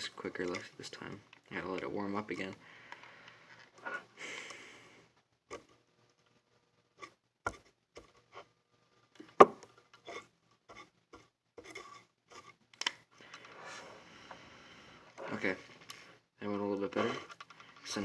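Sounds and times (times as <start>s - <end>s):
small clicks and taps: 12.7s - 13.5s.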